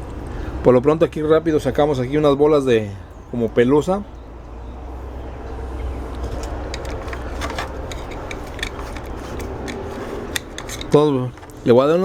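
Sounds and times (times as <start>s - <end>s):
low hum and whooshing: 0.0s - 11.7s
hands clicking plastic fan parts: 5.8s - 12.0s.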